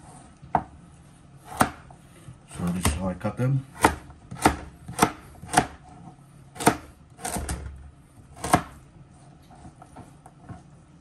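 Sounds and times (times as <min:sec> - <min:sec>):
knife chopping on cutting board: 0:01.4 - 0:02.0, 0:03.7 - 0:05.9, 0:06.5 - 0:08.8.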